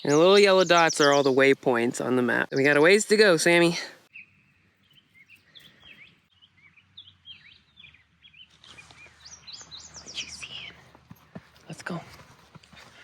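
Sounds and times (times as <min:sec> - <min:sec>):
small birds chirping: 0:00.0 - 0:13.0.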